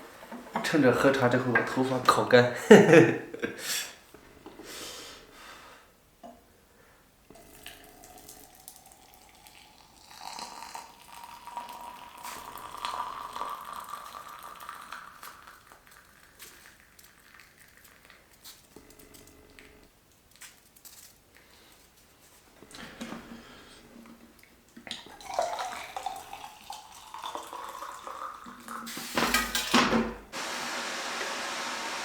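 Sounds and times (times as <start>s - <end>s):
water pouring into a vessel: 7.3s - 18.2s, 24.9s - 29.1s.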